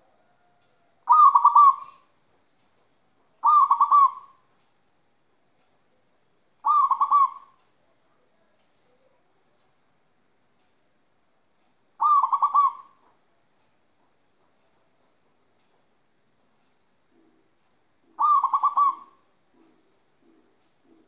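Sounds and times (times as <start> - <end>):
dove cooing: 0.0 - 2.1, 3.4 - 4.4, 6.6 - 7.6, 12.0 - 13.0, 17.1 - 21.0.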